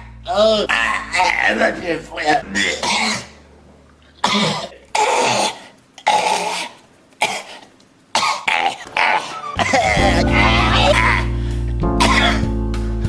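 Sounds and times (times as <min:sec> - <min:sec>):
man coughing: 0:02.5 - 0:03.4, 0:04.2 - 0:05.6, 0:08.2 - 0:11.4, 0:12.0 - 0:12.5.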